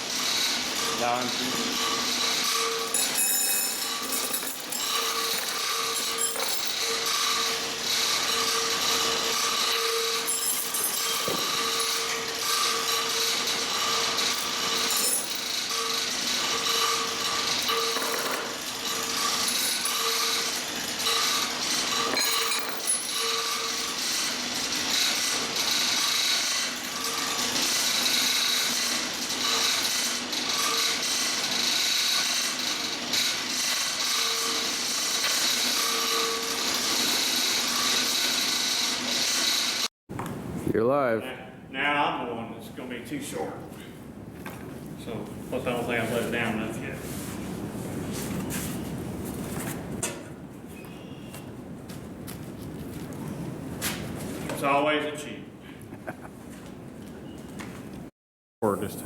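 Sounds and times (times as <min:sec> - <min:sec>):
chain hoist grinding: 0:00.0 - 0:39.9
load brake squeal: 0:00.8 - 0:18.2, 0:18.9 - 0:24.1, 0:34.0 - 0:38.4, 0:50.7 - 0:51.4.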